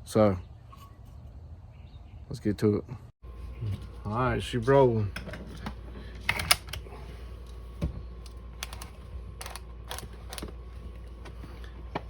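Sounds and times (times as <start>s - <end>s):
shotgun parts clicking: 8.6s - 10.5s.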